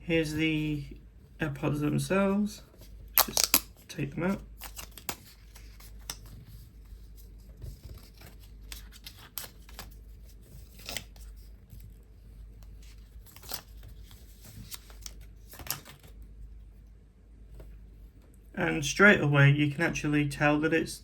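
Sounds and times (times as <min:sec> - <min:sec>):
paper packaging rustling: 0:02.7 - 0:12.1, 0:12.7 - 0:16.2.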